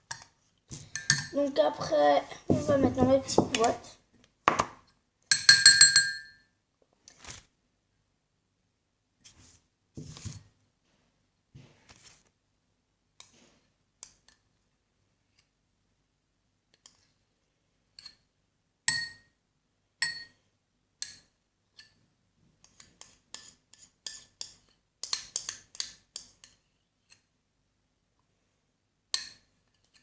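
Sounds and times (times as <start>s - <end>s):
hard objects knocking a container: 2.5s - 3.8s.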